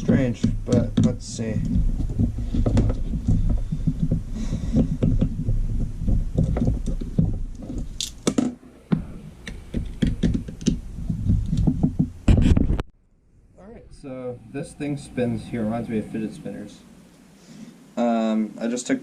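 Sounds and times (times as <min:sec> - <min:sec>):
pump parts clicking and scraping: 0:00.0 - 0:08.5
low rumble: 0:10.8 - 0:17.1.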